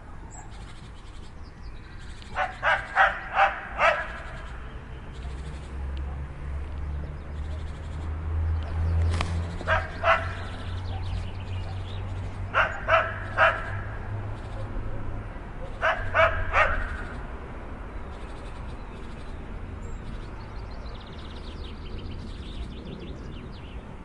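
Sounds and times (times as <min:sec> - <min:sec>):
dog yapping barks: 0:02.3 - 0:04.3, 0:09.6 - 0:11.9, 0:12.5 - 0:14.0, 0:14.6 - 0:17.1.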